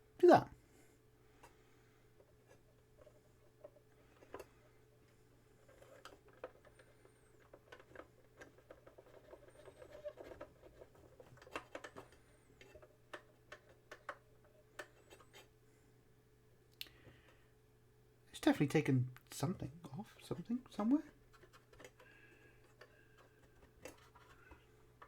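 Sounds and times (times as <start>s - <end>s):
faint scratching of tape head cleaning: 5.6s - 12.9s.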